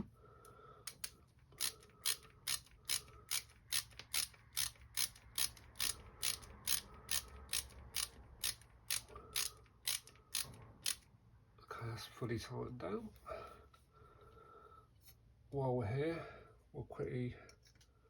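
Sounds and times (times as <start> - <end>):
screwdriver ratchet clicking: 0.9 - 11.1.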